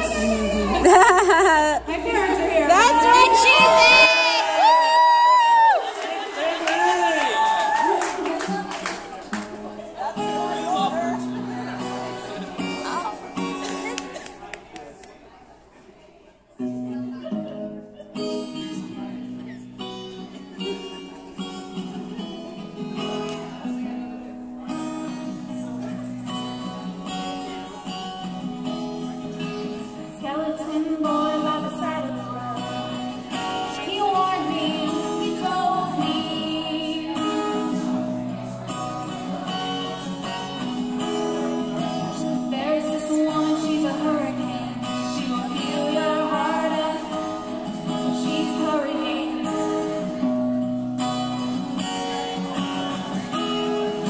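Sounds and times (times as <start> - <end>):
acoustic guitar strumming chords: 9.4 - 14.1, 16.6 - 54.0
woman singing: 30.1 - 37.9, 42.3 - 50.0.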